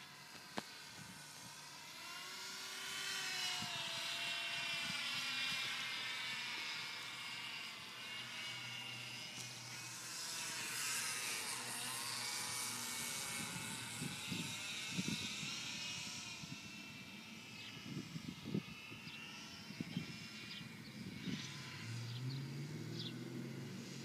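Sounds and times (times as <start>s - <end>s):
model plane motor whining: 0.0s - 24.0s
wind on microphone: 13.0s - 17.0s, 17.6s - 21.8s.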